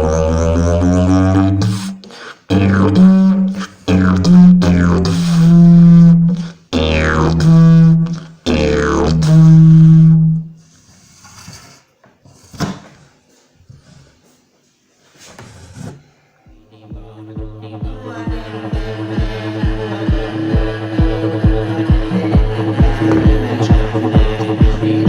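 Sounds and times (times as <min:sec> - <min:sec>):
didgeridoo drone: 0:00.0 - 0:10.5, 0:16.5 - 0:25.0.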